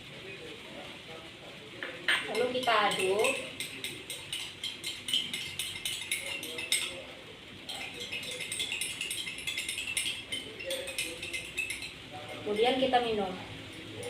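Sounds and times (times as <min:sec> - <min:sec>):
spoon clinking in glass: 0:02.1 - 0:07.0, 0:07.7 - 0:12.8.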